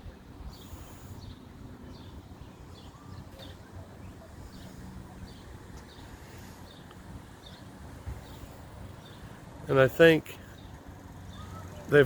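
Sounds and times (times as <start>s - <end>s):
bird chirping: 0.5s - 9.6s.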